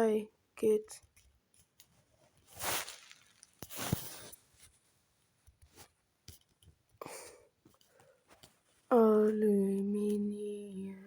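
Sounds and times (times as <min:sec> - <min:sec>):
soft rustle: 0:01.5 - 0:06.6, 0:07.7 - 0:09.4.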